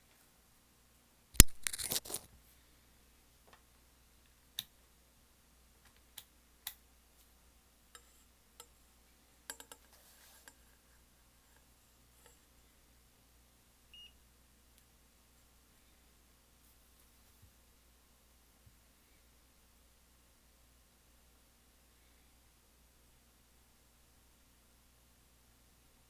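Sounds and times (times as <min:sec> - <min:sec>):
loud sharp click: 0:01.4 - 0:02.0
short crackle: 0:01.4 - 0:02.3.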